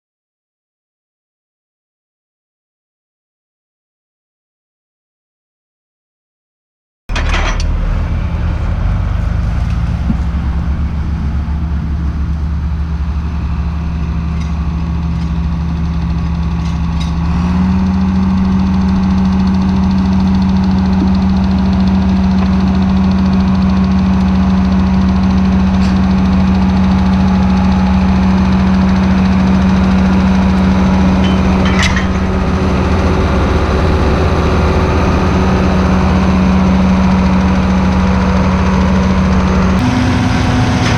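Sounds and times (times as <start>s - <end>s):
diesel engine running: 7.1s - 40.9s.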